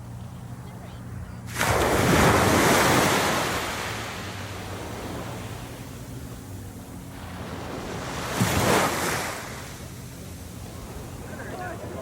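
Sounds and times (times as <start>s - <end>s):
low steady hum: 0.0s - 12.0s
surf washing in: 1.5s - 12.0s.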